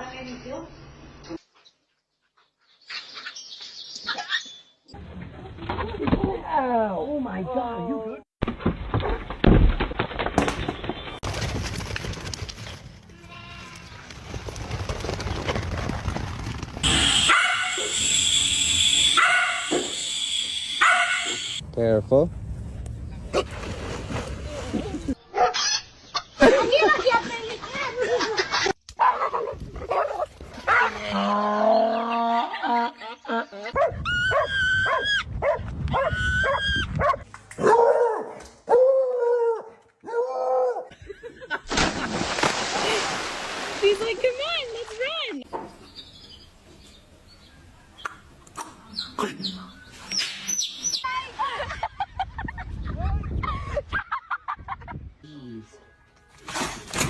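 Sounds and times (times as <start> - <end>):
dog high-pitched calls: 16.8 - 21.6.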